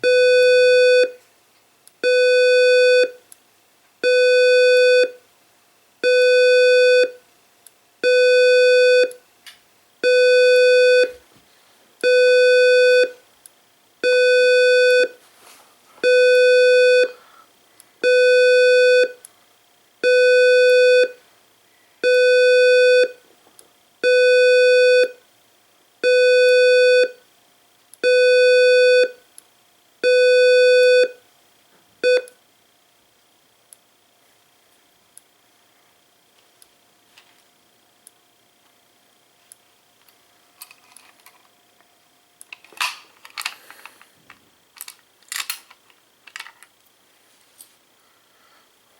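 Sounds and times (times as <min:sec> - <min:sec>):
buzzy fire alarm tone: 0:04.0 - 0:05.2, 0:06.0 - 0:07.2, 0:08.0 - 0:09.1, 0:10.0 - 0:11.2, 0:12.0 - 0:13.2, 0:14.0 - 0:15.2, 0:16.0 - 0:17.2, 0:18.0 - 0:19.2, 0:20.0 - 0:21.2, 0:22.0 - 0:23.2, 0:24.0 - 0:25.2, 0:26.0 - 0:27.2, 0:28.0 - 0:29.2, 0:30.0 - 0:31.2.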